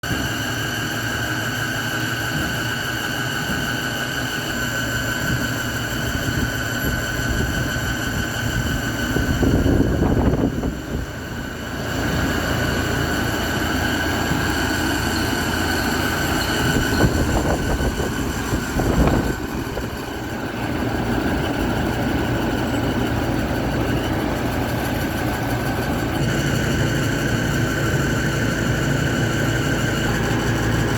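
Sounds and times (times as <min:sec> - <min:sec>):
fan air rushing: 0:00.0 - 0:30.9
high fan whine: 0:00.0 - 0:30.9.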